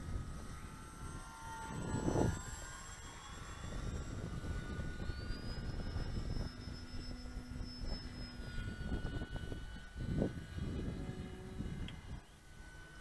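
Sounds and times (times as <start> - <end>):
model airplane motor whining: 0.0 - 13.0.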